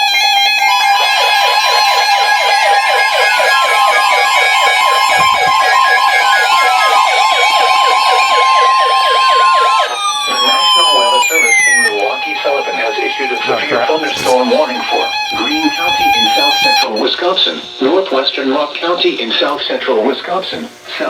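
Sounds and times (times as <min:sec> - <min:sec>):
falling siren-like tone: 0:00.0 - 0:17.3
fast warbling alarm tones: 0:00.0 - 0:21.0
steady weather radio alarm tone: 0:00.0 - 0:21.0.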